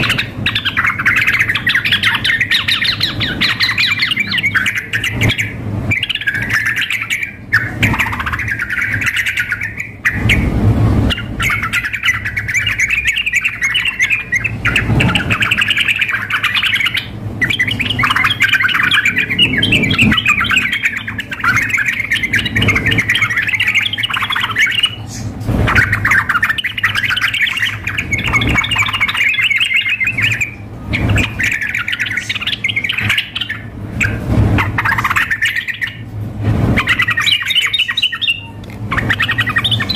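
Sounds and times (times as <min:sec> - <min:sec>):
birds warbling and calling: 0:00.0 - 0:39.9.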